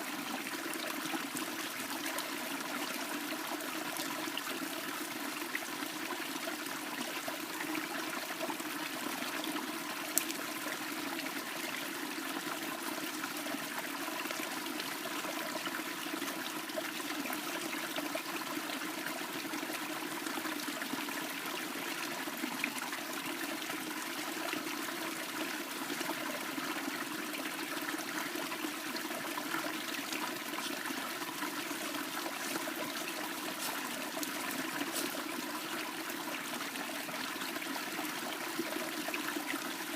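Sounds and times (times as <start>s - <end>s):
running water trickling: 25.6s - 39.9s.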